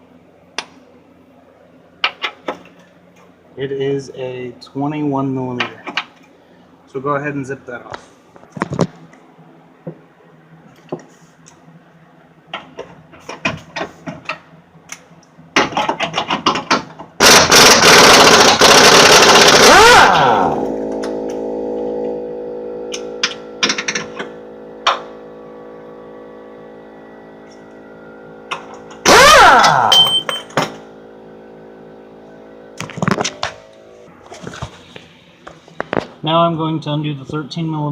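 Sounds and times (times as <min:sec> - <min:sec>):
steady hum: 0:00.0 - 0:37.9
impact wrench hammering: 0:16.6 - 0:20.1, 0:22.9 - 0:25.1, 0:28.5 - 0:30.9.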